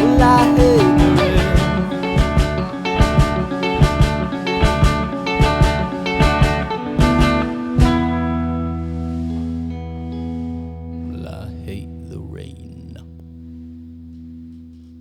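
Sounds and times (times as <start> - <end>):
drum beat: 0.0 - 4.2
electric guitars: 0.0 - 12.0.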